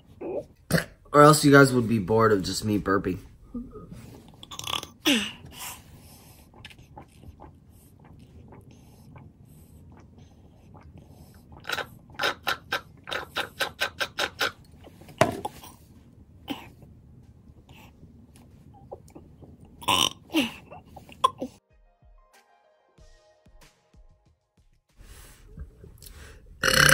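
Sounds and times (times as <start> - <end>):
man burping: 0.7 - 1.1, 19.8 - 21.5, 26.6 - 26.9.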